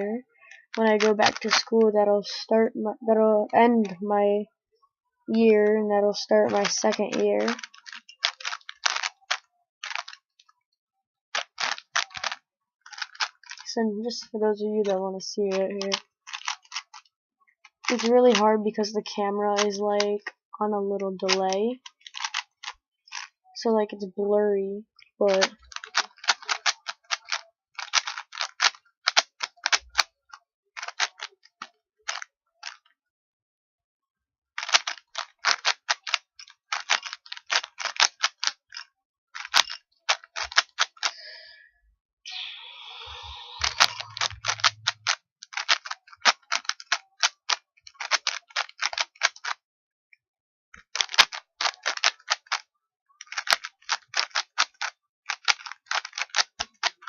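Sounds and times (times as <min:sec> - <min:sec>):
plastic puzzle cube clicking: 0:00.4 - 0:01.8, 0:06.5 - 0:10.2, 0:11.4 - 0:13.7, 0:15.8 - 0:18.4, 0:21.3 - 0:23.3, 0:25.2 - 0:30.2, 0:30.8 - 0:32.9, 0:34.6 - 0:41.2, 0:43.0 - 0:49.6, 0:50.8 - 0:57.0.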